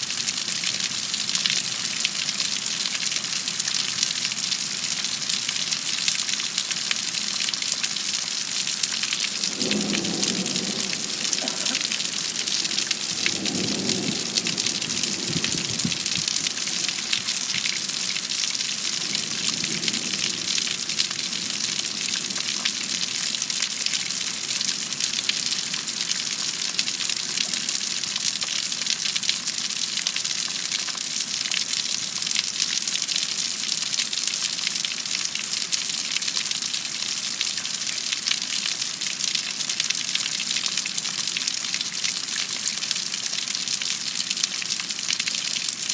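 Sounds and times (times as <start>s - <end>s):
heavy rain pouring: 0.0s - 34.0s
thunder rumble: 8.9s - 23.2s.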